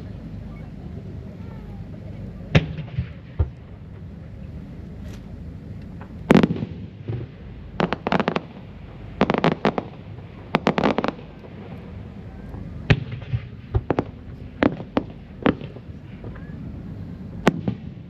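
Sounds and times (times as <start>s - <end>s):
firework shells bursting: 5.9s - 8.6s.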